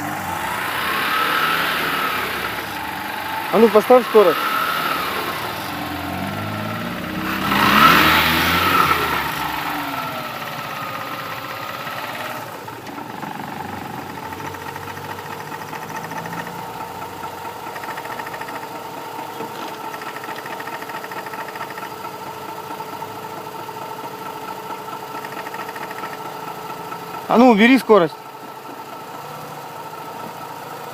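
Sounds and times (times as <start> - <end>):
rotary engine revving and idling: 0.0 - 30.9.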